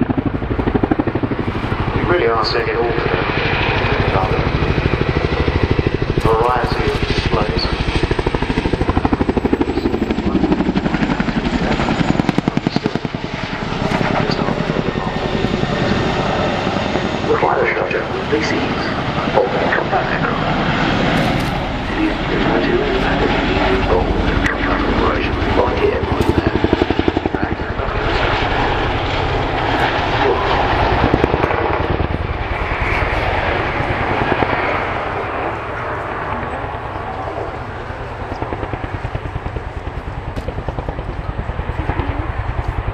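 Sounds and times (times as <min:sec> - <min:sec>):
helicopter rotor blades beating: 0:00.0 - 0:42.9
turbine engines: 0:00.0 - 0:42.9.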